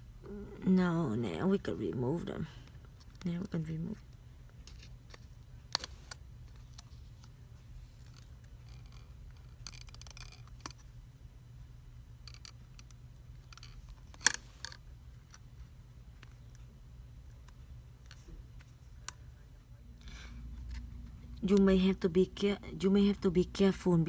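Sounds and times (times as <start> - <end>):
steady low hum: 0.0 - 24.0
small tools clicking on phone parts: 8.0 - 10.8, 12.2 - 15.4.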